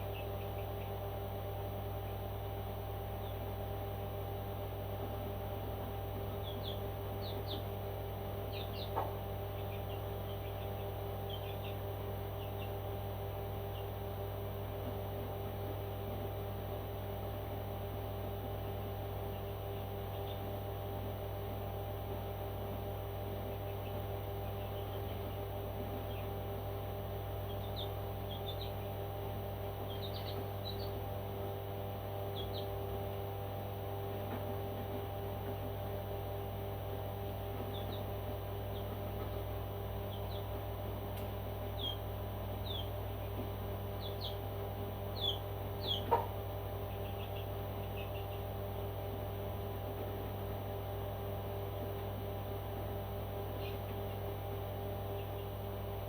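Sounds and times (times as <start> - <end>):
low electrical hum: 0.0 - 56.0
bird chirping: 6.4 - 7.7, 8.5 - 9.0, 9.6 - 11.8, 27.4 - 28.9, 29.8 - 31.0, 32.3 - 32.7, 37.7 - 38.1, 40.1 - 40.6, 41.8 - 42.0, 42.6 - 43.3, 44.0 - 44.5, 45.1 - 46.3, 46.9 - 48.4.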